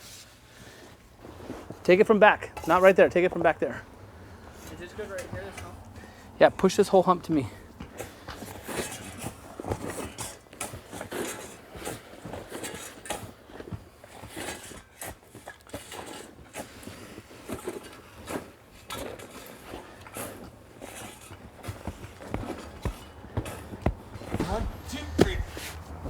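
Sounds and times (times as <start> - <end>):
dirt scraping and crunching: 21.0 - 26.0.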